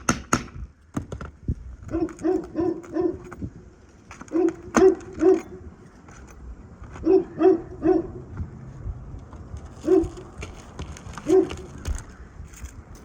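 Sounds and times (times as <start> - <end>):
dog barking: 1.9 - 3.2, 4.3 - 5.5, 7.0 - 8.2, 11.3 - 11.6.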